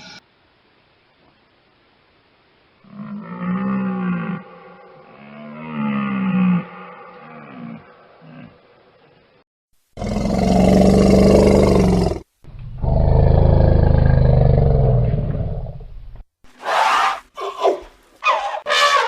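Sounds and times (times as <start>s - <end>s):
big cat roaring: 2.9s - 8.6s, 10.0s - 15.8s
animal high-pitched calls: 16.6s - 19.0s.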